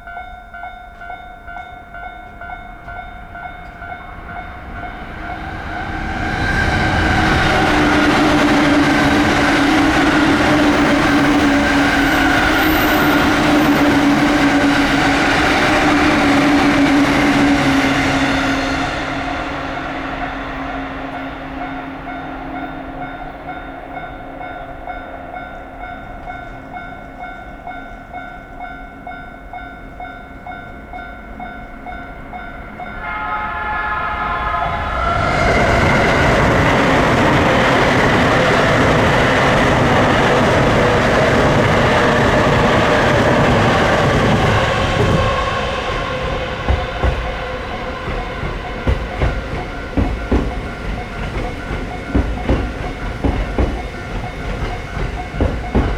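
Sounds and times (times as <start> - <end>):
train passing loudly: 0.0 - 55.9
wheels clacking over rail joints: 35.6 - 55.9.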